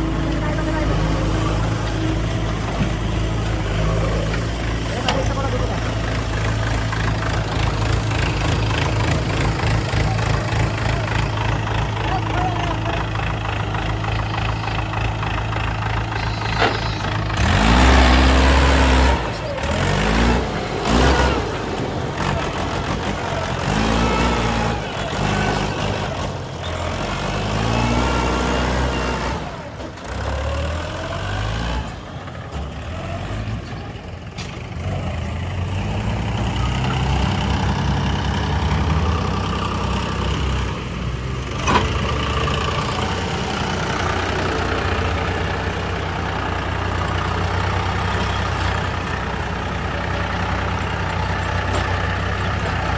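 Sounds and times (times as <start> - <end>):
diesel engine revving: 0.0 - 52.9.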